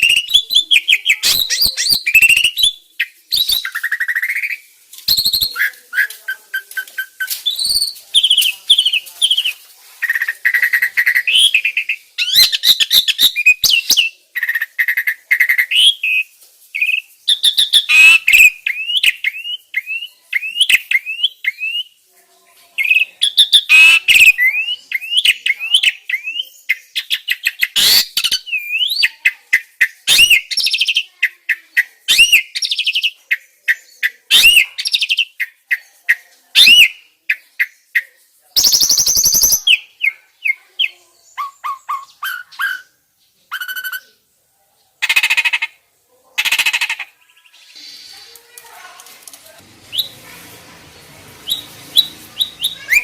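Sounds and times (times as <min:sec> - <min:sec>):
starling song: 0:47.3 - 0:53.0.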